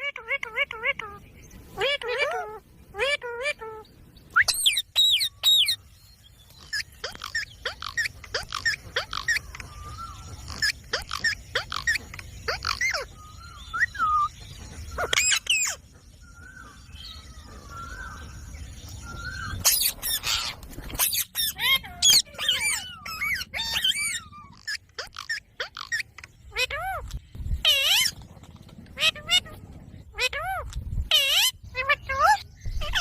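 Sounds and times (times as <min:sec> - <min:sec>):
parrot shrill calls: 0:01.8 - 0:05.8, 0:06.6 - 0:14.3, 0:14.9 - 0:15.8, 0:19.2 - 0:28.2, 0:28.9 - 0:33.0.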